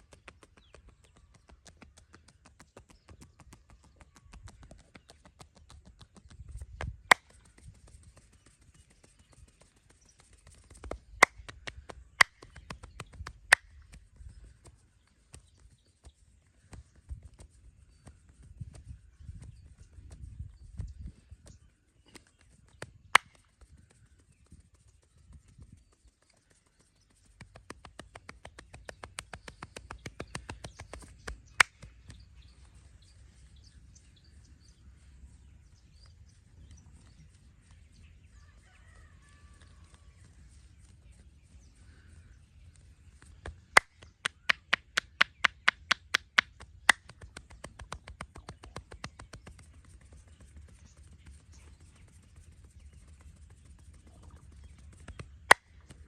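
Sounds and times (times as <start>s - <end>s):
sharp snaps: 6.8s - 7.5s, 10.5s - 14.1s, 22.1s - 23.6s, 27.4s - 32.2s, 43.4s - 49.6s, 55.1s - 56.0s
massage slapping taps: 43.4s - 49.6s.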